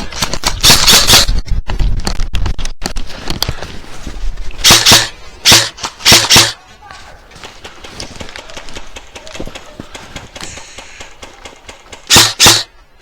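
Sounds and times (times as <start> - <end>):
airsoft guns firing: 0.6 - 1.3, 4.6 - 6.6, 7.4 - 12.7.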